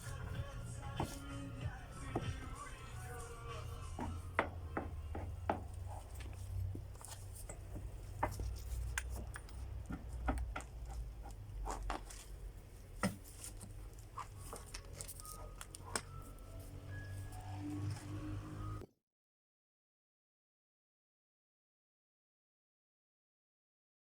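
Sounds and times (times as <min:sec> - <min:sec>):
hand tools knocking on wood: 0:00.3 - 0:02.6, 0:03.9 - 0:06.9, 0:07.5 - 0:11.4.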